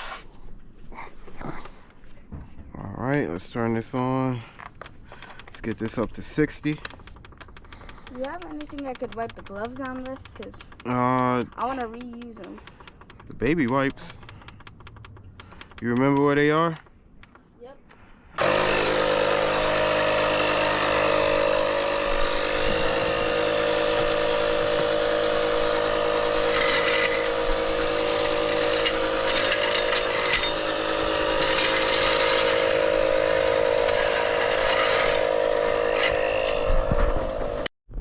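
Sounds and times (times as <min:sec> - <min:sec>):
faint clicks: 0:04.6 - 0:18.2
air compressor motor drone: 0:18.3 - 0:37.7.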